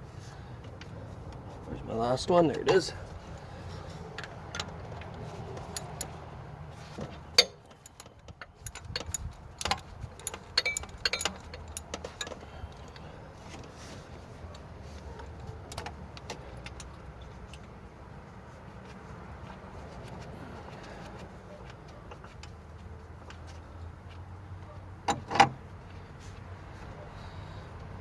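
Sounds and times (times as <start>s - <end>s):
metal wrench clinks: 5.6s - 6.2s, 7.4s - 13.0s.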